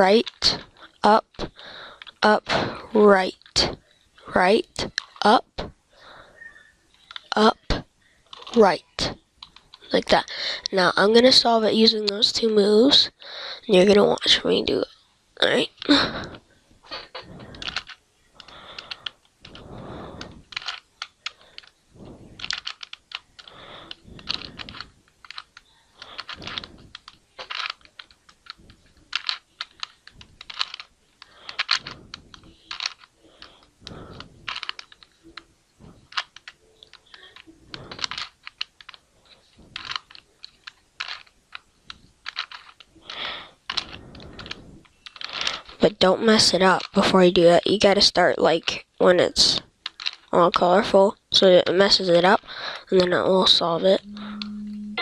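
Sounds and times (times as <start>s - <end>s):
puzzle cube clicking: 4.4s - 5.7s, 7.0s - 10.3s, 17.0s - 39.0s, 39.7s - 47.1s, 49.8s - 50.9s.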